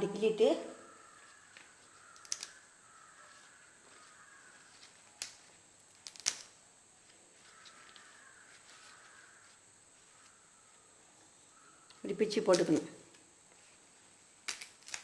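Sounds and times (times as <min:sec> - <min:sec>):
leaves being torn by hand: 0:01.5 - 0:06.6, 0:12.2 - 0:12.9, 0:14.4 - 0:15.0
stalks snapping: 0:01.6 - 0:02.6, 0:05.2 - 0:06.6, 0:14.4 - 0:15.0.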